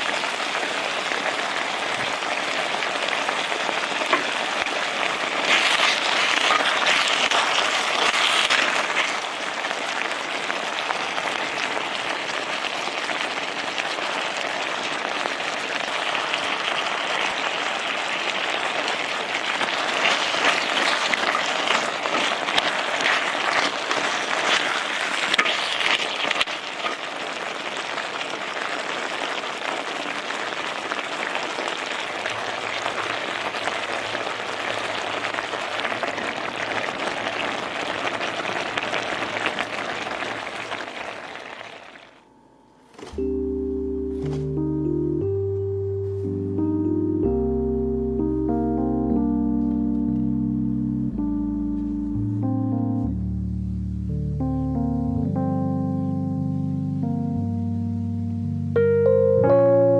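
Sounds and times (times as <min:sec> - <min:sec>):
food sizzling in a hot pan: 0:00.0 - 0:42.2.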